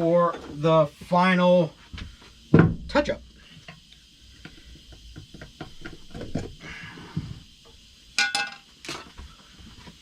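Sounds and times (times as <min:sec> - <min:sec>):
knocks and clatter on workbench: 0:02.5 - 0:02.9.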